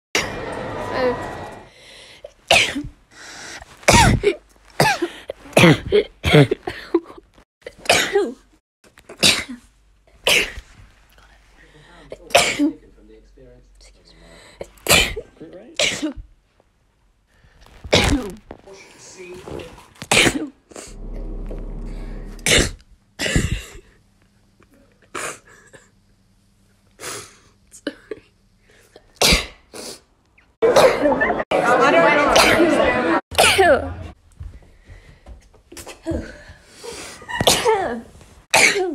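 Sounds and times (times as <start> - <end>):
person sneezing: 3.9 - 6.6
steady low hum: 20.8 - 23.8.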